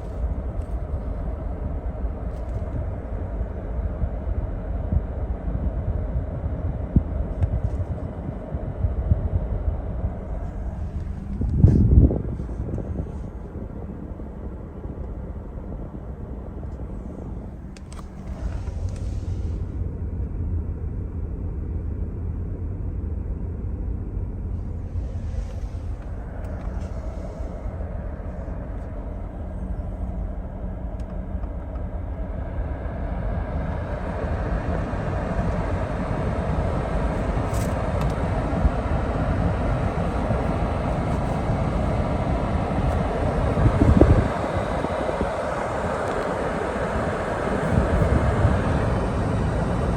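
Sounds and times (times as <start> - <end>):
car engine and road noise: 0.0 - 49.9.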